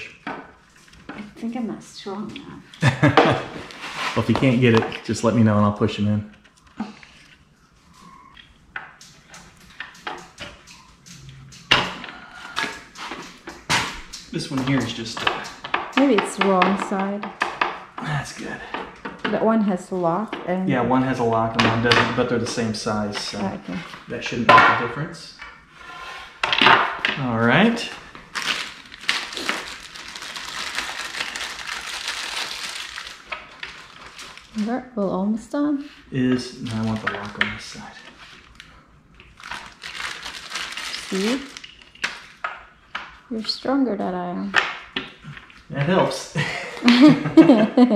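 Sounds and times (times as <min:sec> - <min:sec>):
rustling and scraping: 0:03.2 - 0:05.1, 0:25.4 - 0:34.7.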